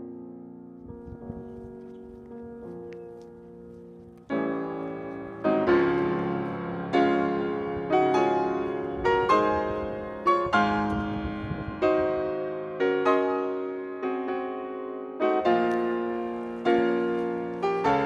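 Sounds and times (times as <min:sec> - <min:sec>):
slow piano chords: 0:00.0 - 0:18.0.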